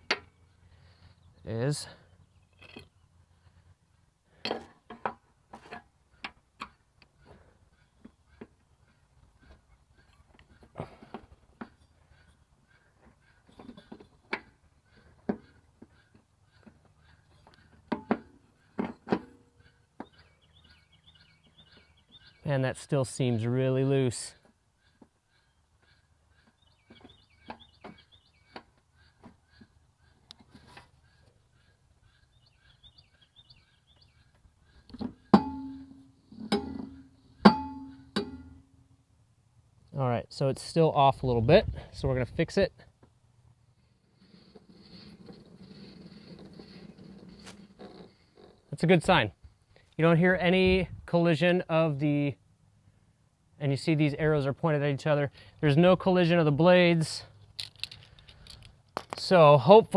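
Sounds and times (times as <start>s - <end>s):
tools knocking and clanking: 17.9s - 19.4s, 34.9s - 38.6s.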